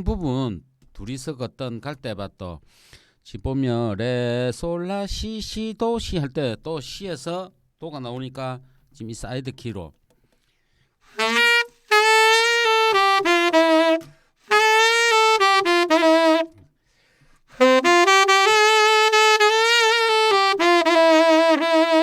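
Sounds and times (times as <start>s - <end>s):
saxophone playing slow ballad: 11.1s - 16.6s, 17.5s - 22.0s.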